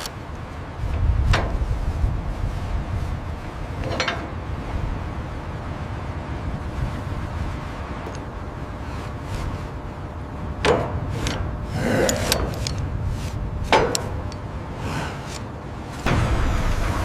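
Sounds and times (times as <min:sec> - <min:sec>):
steady low rumble: 0:00.0 - 0:17.0
scraping rub: 0:11.0 - 0:16.1.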